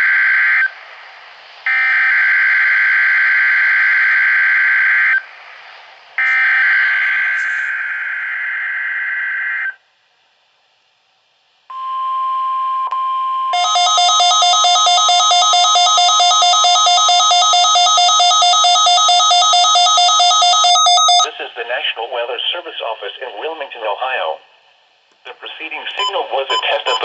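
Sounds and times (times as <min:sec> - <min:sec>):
rapidly pulsing buzzer alarm: 0:13.5 - 0:21.3
steady warning alarm tone: 0:13.5 - 0:21.3, 0:26.0 - 0:27.0
digital data burst: 0:26.0 - 0:27.0.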